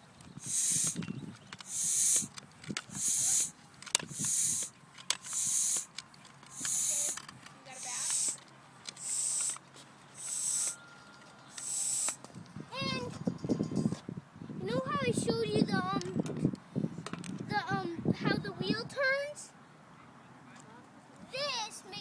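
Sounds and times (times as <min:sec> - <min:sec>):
pump clicks: 0:00.4 - 0:09.6, 0:10.2 - 0:10.8, 0:11.5 - 0:12.2
bicycle pump hissing: 0:00.4 - 0:10.8, 0:11.5 - 0:12.2.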